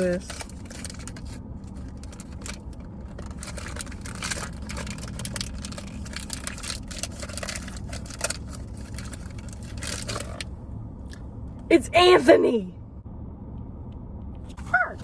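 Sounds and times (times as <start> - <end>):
low hum: 0.0 - 15.0
plastic rustling: 0.2 - 10.5.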